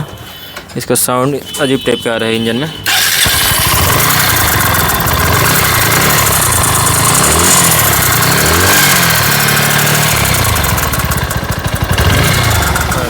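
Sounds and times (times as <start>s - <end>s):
engine tik-tik noise: 2.8s - 13.0s
motorcycle engine idling: 2.9s - 13.0s.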